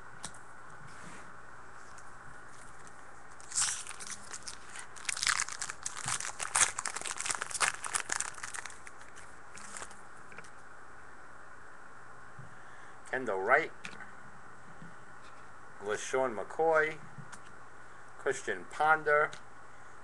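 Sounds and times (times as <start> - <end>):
foil wrapper crinkling: 2.6 - 10.5.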